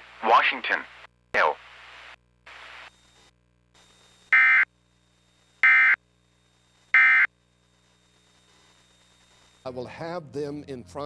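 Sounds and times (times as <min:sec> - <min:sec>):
shrill two-tone digital data bursts: 0:04.3 - 0:04.7, 0:05.6 - 0:06.0, 0:06.9 - 0:07.3.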